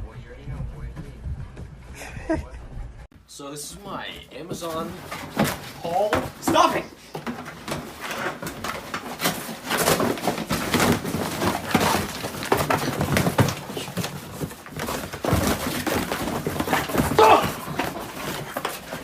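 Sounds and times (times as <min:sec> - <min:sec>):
packaging rustling and crinkling: 0:04.5 - 0:19.0.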